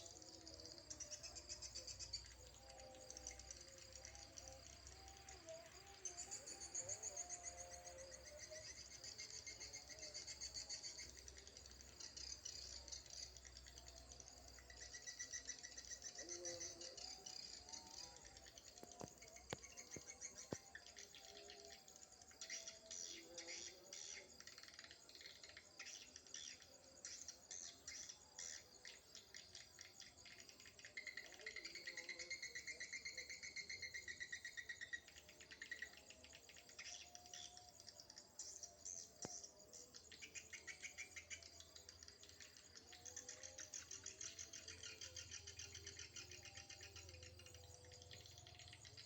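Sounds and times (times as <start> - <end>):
low wavering whistles: 0.0 - 11.4.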